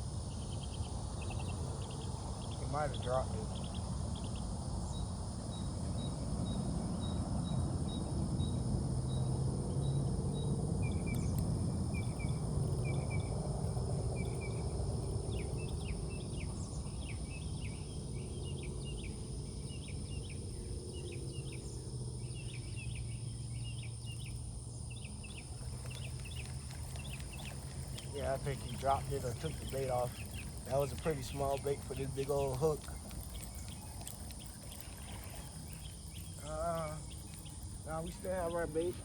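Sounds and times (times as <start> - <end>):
insects droning: 0.0 - 39.0
birds chirping: 0.3 - 4.5, 10.8 - 39.0
low water rush: 25.4 - 39.0.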